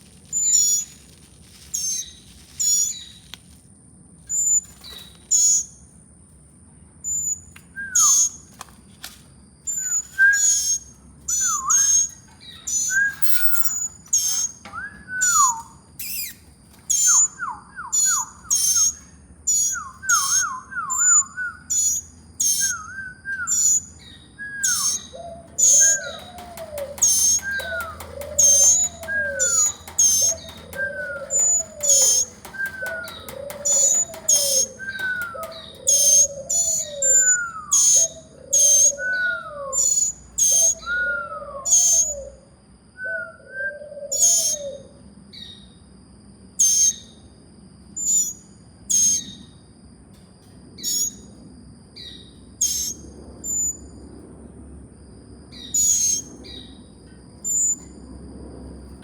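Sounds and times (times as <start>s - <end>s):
nestling birds peeping: 0.0s - 3.4s, 4.3s - 5.9s, 7.0s - 42.4s, 43.9s - 45.8s, 48.0s - 49.6s, 50.8s - 53.9s, 55.5s - 57.9s
lower bird call: 9.7s - 42.4s.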